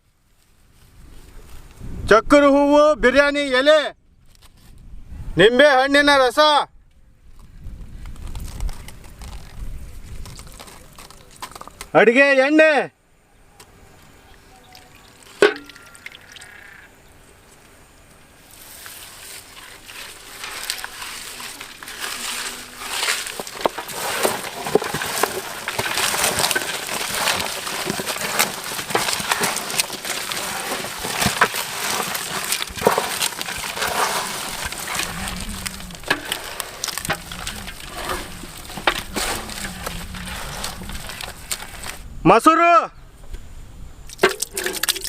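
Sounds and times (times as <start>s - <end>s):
chicken squishing in marinade: 19.8s - 42.0s.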